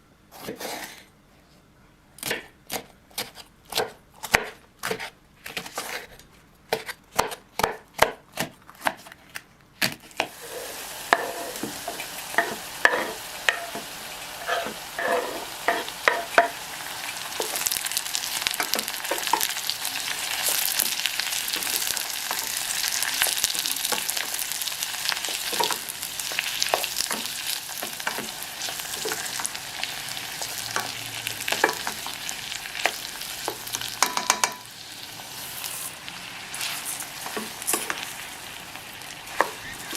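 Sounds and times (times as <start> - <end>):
knife chopping on a board: 2.2 - 6.0, 6.7 - 9.1
utensil scraping a pan: 10.3 - 34.6, 35.2 - 38.3
food sizzling in hot oil: 10.3 - 39.9.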